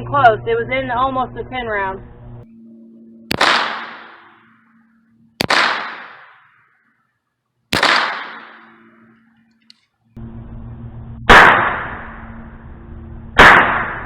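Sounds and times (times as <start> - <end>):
gunshots: 3.3 - 4.5, 5.4 - 6.6, 7.7 - 9.2, 11.3 - 12.2, 13.4 - 14.0.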